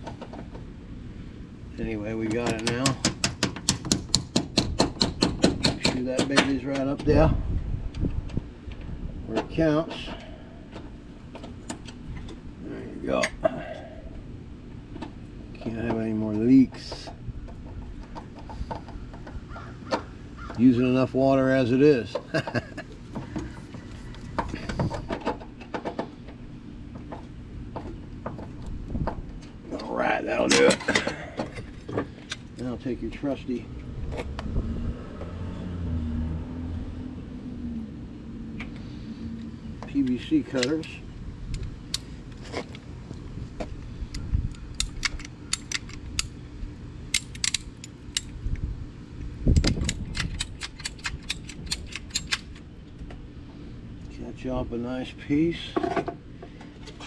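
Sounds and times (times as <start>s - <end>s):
steady low hum: 0.0s - 57.0s
pipe cutters clicking on pipe: 2.2s - 7.1s, 44.1s - 46.4s, 47.1s - 48.4s, 49.5s - 52.6s
heavy handling noise: 22.1s - 34.5s, 38.5s - 48.7s, 49.4s - 53.6s.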